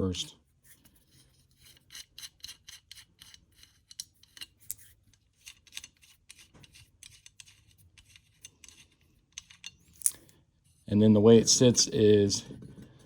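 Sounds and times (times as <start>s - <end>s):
metallic clicks of nuts spinning: 1.7s - 10.3s.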